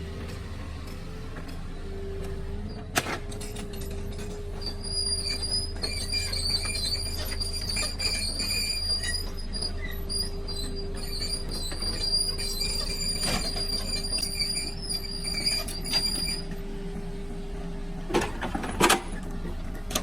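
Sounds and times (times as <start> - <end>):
excavator engine hum: 0.0 - 20.0
high-pitched metallic squealing: 4.6 - 16.5.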